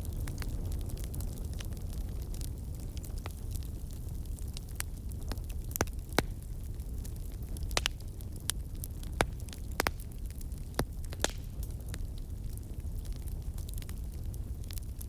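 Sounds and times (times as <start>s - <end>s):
wood fire crackling: 0.0s - 15.0s.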